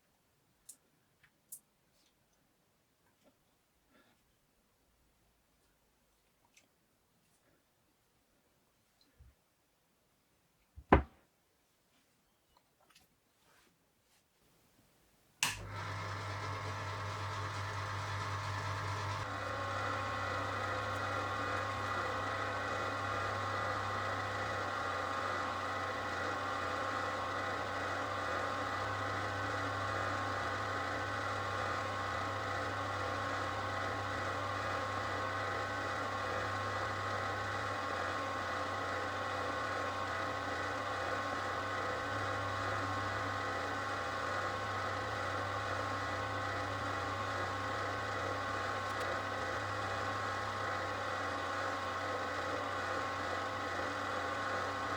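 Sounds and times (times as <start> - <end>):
small electric motor whining: 15.6 - 54.9.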